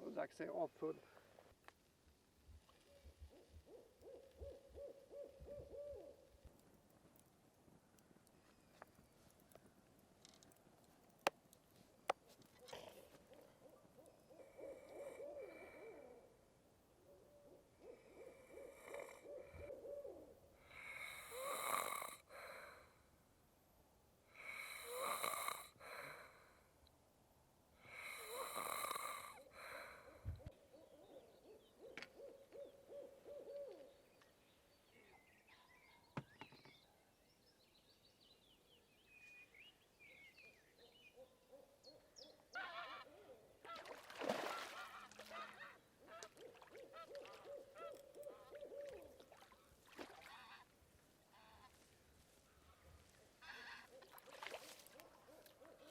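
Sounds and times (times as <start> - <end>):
wavering breaths: 14.3 - 16.3
man snoring: 20.8 - 22.2, 24.4 - 25.8, 27.9 - 29.4.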